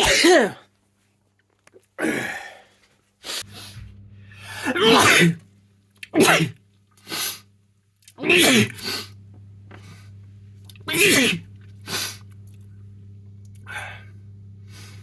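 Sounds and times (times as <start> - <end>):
person sneezing: 0.0 - 0.6, 4.4 - 5.4, 6.0 - 7.4, 8.2 - 9.1, 10.8 - 12.2.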